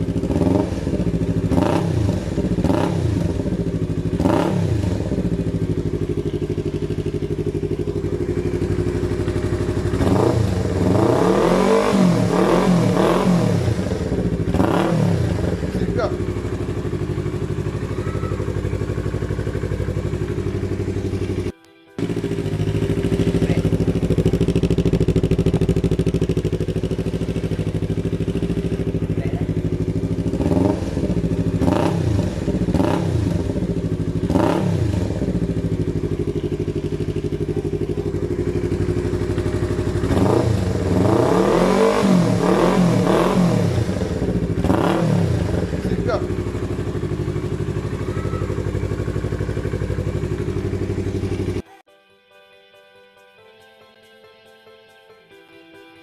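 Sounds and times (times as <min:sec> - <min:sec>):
motorcycle engine idling: 0:00.0 - 0:51.6
motorcycle engine revving: 0:00.0 - 0:51.6
motorcycle throttle blips: 0:00.0 - 0:51.6.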